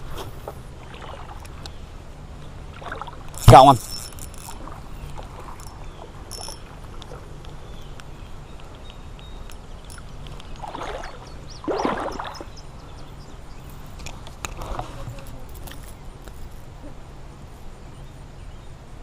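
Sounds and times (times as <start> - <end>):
faint background noise: 0.0 - 19.0
fish splashing in water: 10.6 - 12.6.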